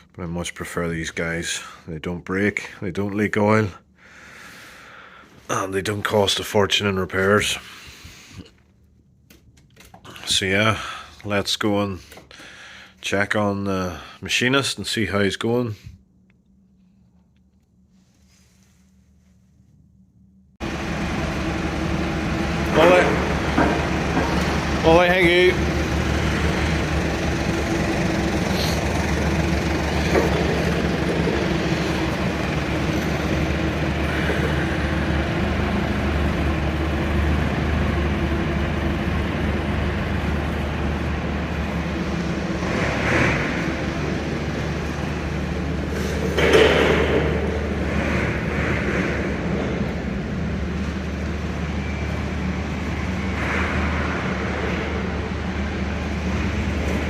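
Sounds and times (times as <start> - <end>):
workshop machinery humming: 16.0 - 57.0.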